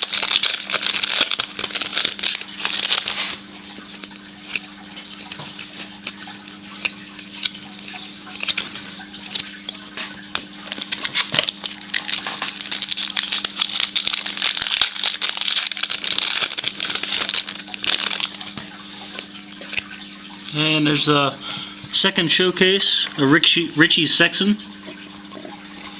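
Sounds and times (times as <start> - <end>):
cards rustling: 0.0 - 3.4, 8.4 - 19.9
wrappers crinkling: 0.0 - 20.4.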